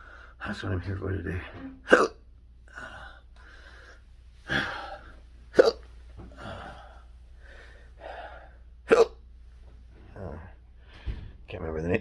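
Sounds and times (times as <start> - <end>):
quiet breaths: 0.0 - 0.6, 2.7 - 8.8, 9.4 - 11.5
man hiccuping: 1.8 - 3.2, 5.5 - 6.8, 8.8 - 9.2
breathy burst: 2.7 - 5.2.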